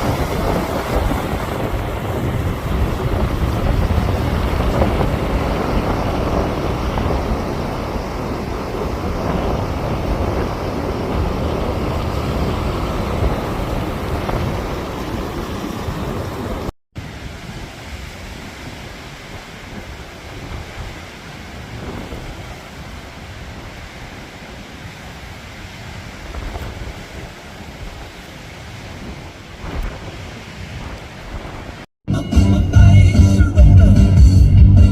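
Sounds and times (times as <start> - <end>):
breaking surf: 0.0 - 31.9
wind gusting across microphone: 0.0 - 31.9.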